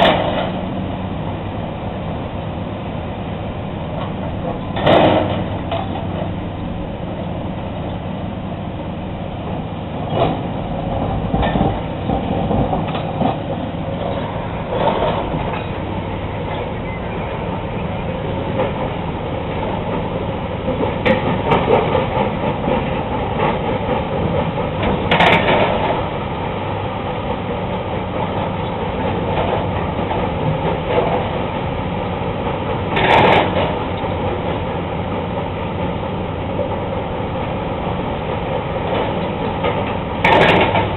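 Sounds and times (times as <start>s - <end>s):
engine hum: 0.0s - 40.9s
rock crusher rumbling: 0.0s - 40.9s
loud clatters: 4.0s - 6.3s, 32.9s - 33.8s, 38.9s - 40.9s.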